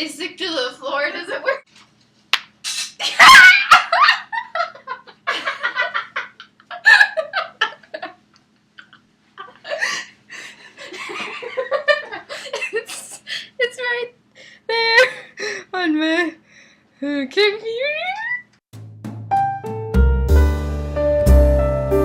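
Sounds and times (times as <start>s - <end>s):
people laughing: 3.1s - 8.2s, 10.8s - 12.9s.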